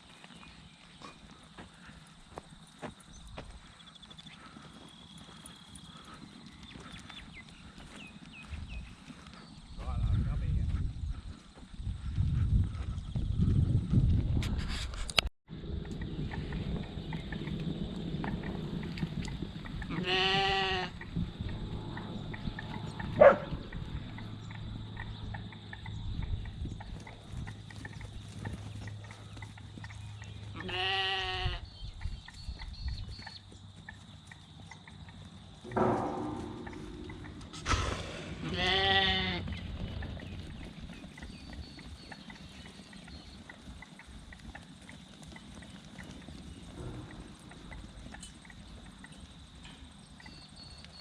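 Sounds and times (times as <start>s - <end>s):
sheep bleating: 19.9s - 21.0s, 30.6s - 31.6s, 38.4s - 39.4s
loud sharp knock: 35.7s - 39.3s.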